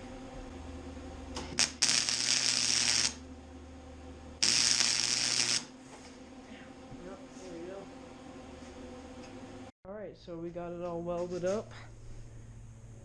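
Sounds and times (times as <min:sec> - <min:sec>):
electrical hum: 0:00.0 - 0:13.0
welding arc crackling: 0:01.4 - 0:03.2, 0:04.4 - 0:05.7.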